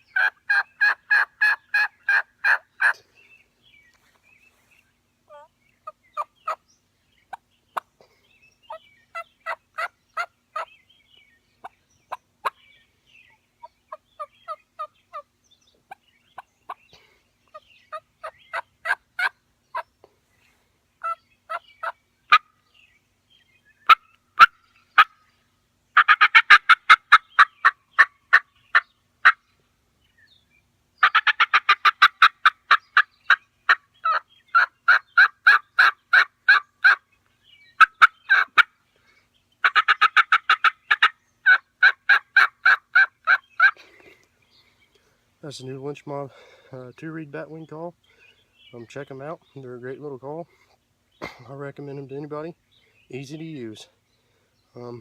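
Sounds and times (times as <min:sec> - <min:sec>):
diaphragm turkey call yelping: 0:00.0 - 0:03.0, 0:05.3 - 0:06.6, 0:08.7 - 0:10.8, 0:11.6 - 0:15.3, 0:17.4 - 0:19.9, 0:21.0 - 0:22.7, 0:23.8 - 0:25.3, 0:25.9 - 0:29.5, 0:31.0 - 0:38.8, 0:39.6 - 0:43.9.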